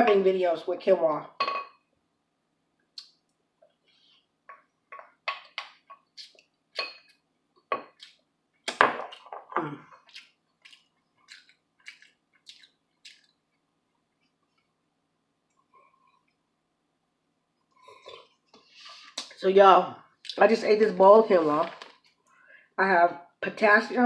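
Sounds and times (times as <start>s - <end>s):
chewing clicks and mouth smacks: 5.4s - 9.3s, 9.9s - 13.6s.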